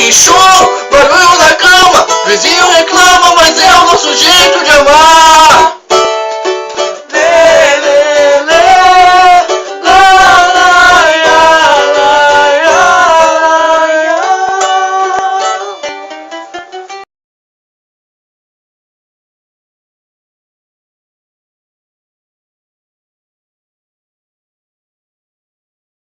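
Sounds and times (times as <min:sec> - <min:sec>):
small guitar strumming: 0:00.0 - 0:17.1.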